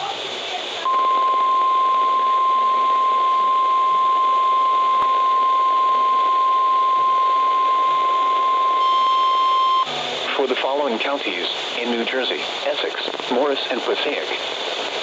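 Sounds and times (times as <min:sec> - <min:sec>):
radio hiss: 0:00.0 - 0:15.0
steady alarm tone: 0:00.9 - 0:09.9.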